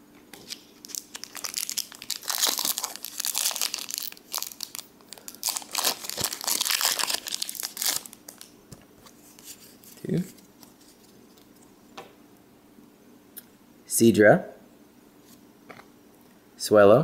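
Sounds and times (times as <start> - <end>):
foil wrapper crinkling and tearing: 0.3 - 8.5.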